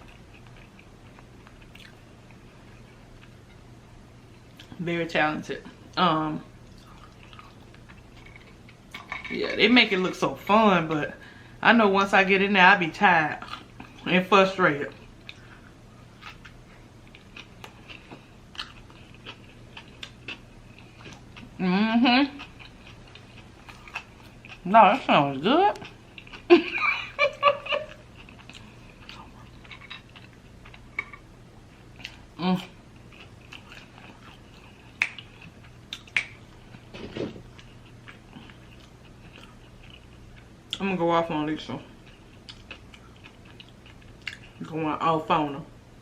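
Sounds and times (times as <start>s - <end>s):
person chewing food: 0.0s - 3.7s, 6.6s - 9.0s, 13.4s - 14.1s, 14.9s - 21.6s, 22.4s - 24.7s, 25.7s - 40.8s, 42.0s - 44.7s.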